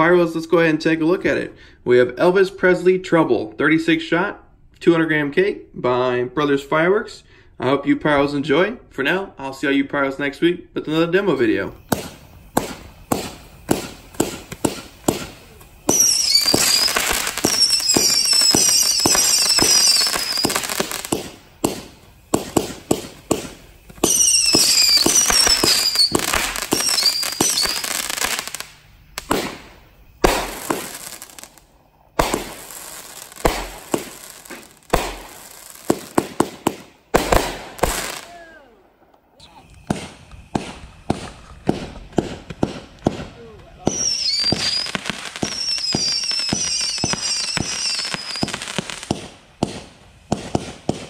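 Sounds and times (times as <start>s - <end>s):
dense firework crackling: 10.9s - 51.0s
firework bangs: 10.9s - 51.0s
firework launch shots: 11.4s - 38.6s, 39.6s - 51.0s
short falling whistles: 13.8s - 20.8s, 24.0s - 28.6s, 43.9s - 48.6s.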